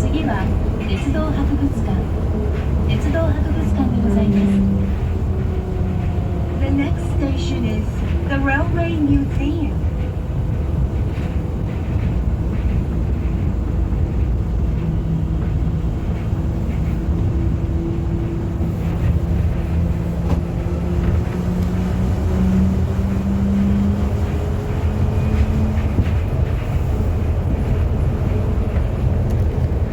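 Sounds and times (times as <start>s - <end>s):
train cabin rumble: 0.0s - 29.9s.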